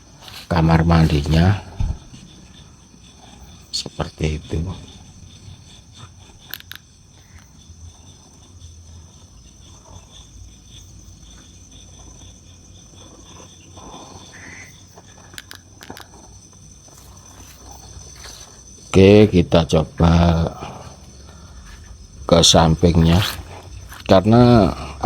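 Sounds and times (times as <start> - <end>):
crickets chirping: 0.0 - 25.0
sharp clicks: 6.4 - 7.5, 15.3 - 16.1.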